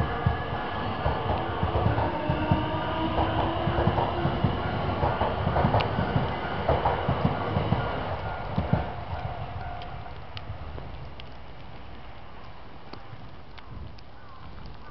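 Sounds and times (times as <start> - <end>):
electric train passing: 0.0 - 12.9.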